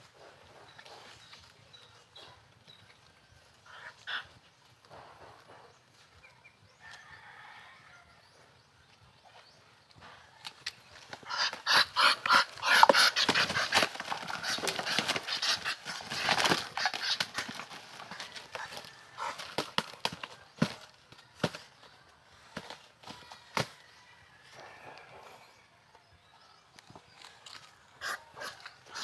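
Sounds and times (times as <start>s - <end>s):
birds flapping and scuffling: 10.2s - 25.5s.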